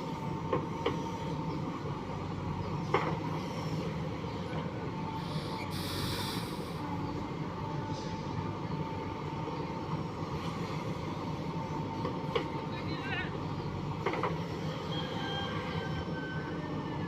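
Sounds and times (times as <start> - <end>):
diesel engine running: 4.8 - 7.2
thin steady whine: 5.2 - 6.8
short hiss: 5.3 - 6.8.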